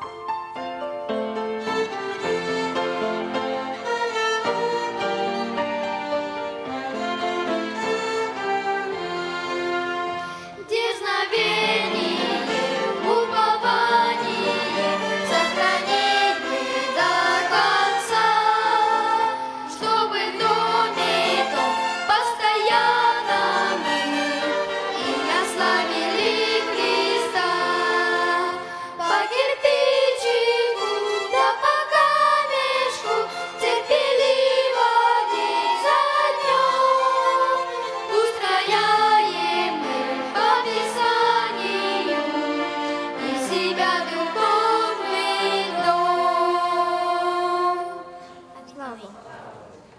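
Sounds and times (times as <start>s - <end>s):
violins: 0.0s - 48.5s
choir singing: 10.6s - 48.5s.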